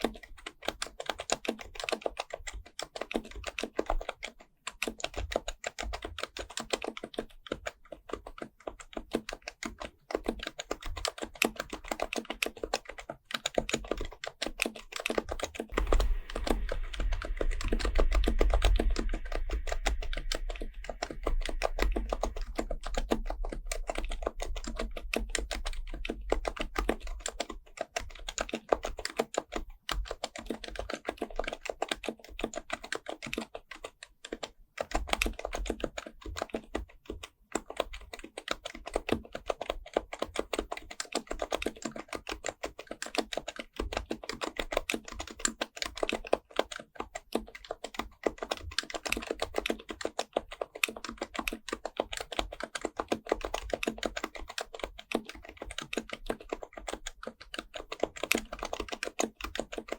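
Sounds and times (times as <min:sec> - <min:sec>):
fast keyboard typing: 0:00.0 - 0:59.9
low thud: 0:15.8 - 0:21.9.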